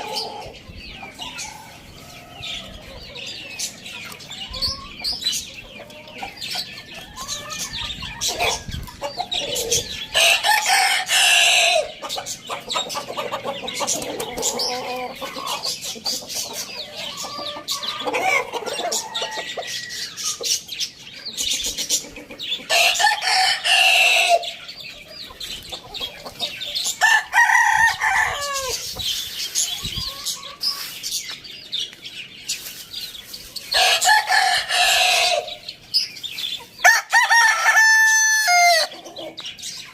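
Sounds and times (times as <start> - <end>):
roosters crowing: 0.0 - 15.8, 16.4 - 20.5, 21.9 - 24.8, 25.4 - 31.0, 33.6 - 35.9, 36.7 - 39.5
chickens clucking: 0.0 - 39.9.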